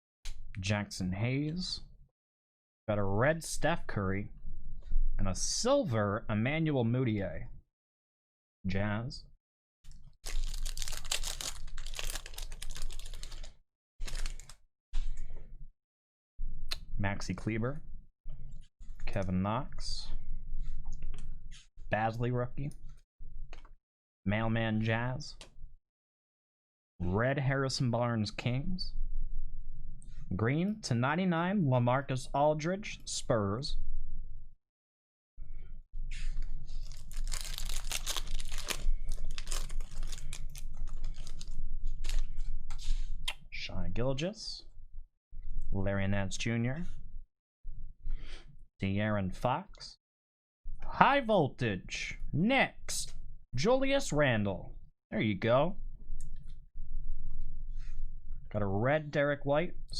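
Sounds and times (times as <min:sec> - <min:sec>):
foil wrappers tearing and crinkling: 0:10.2 - 0:14.6, 0:36.8 - 0:42.3.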